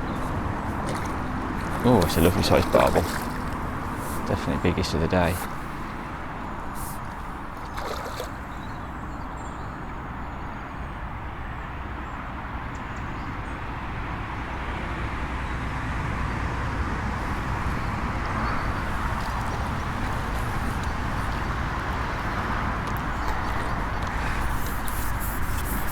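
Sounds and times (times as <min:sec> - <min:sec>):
outdoor background noise: 0:00.0 - 0:25.9.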